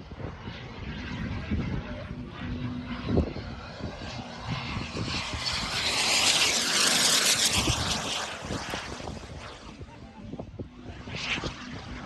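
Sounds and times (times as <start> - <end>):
jet engine hissing: 4.4 - 9.8.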